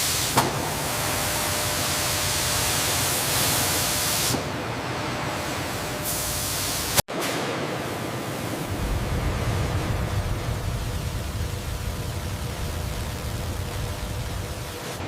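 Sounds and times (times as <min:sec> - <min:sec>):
loud hiss: 0:08.6 - 0:15.0.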